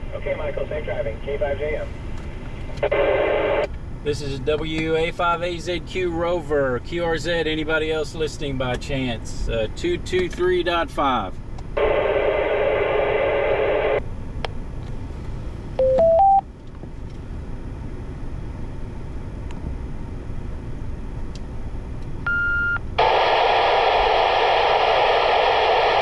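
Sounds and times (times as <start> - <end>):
radio static hiss: 0.0 - 3.7, 11.8 - 14.0, 23.0 - 26.0
short electronic beeps: 15.8 - 16.5.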